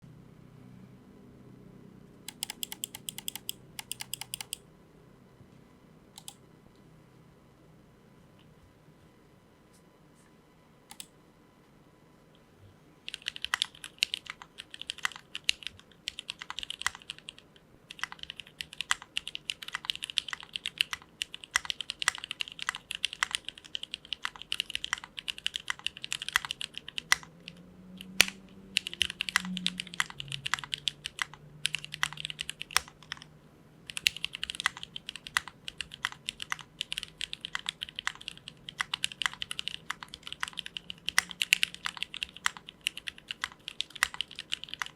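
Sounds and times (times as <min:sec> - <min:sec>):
mechanical keyboard typing: 0:02.3 - 0:04.6, 0:06.2 - 0:06.4, 0:10.9 - 0:11.1, 0:13.0 - 0:33.3, 0:33.9 - 0:44.9.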